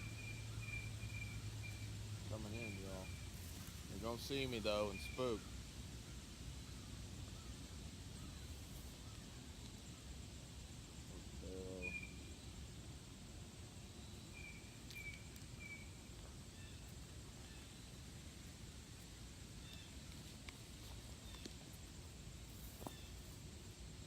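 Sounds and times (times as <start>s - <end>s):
faint high bird chirps: 0.0s - 10.1s, 11.4s - 12.6s, 13.8s - 17.9s, 22.6s - 23.4s
steady low hiss: 0.0s - 24.0s
low pitched call: 11.0s - 12.4s.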